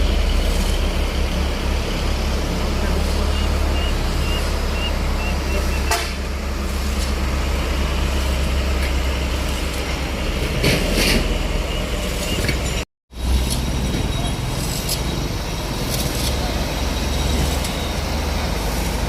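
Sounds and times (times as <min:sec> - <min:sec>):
large vehicle engine running: 0:00.0 - 0:19.0.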